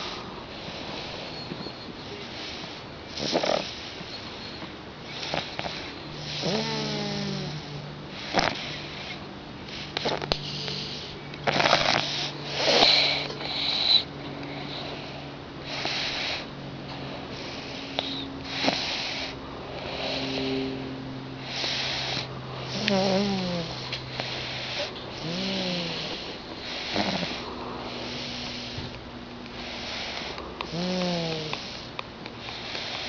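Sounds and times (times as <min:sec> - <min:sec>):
nasal snoring: 0:00.0 - 0:04.2, 0:05.1 - 0:33.0
squeaky nasal whistle: 0:01.2 - 0:02.2.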